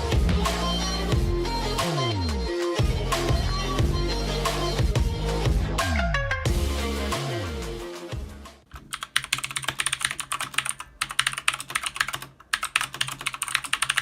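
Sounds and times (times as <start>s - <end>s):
music: 0.0s - 8.7s
fast typing on clicky keyboard: 8.8s - 14.0s.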